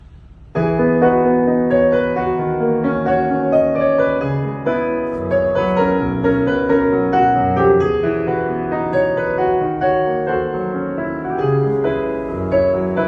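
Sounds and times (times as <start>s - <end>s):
digital piano chords: 0.5s - 13.0s.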